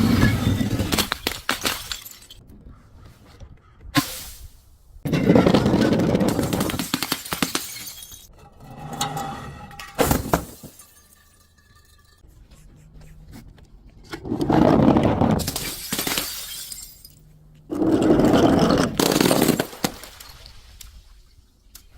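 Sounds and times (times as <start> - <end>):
glass bottles breaking: 0.0 - 2.4, 5.1 - 8.3, 9.7 - 12.2, 15.4 - 17.3, 18.9 - 20.6
glass clinking: 9.7 - 12.2.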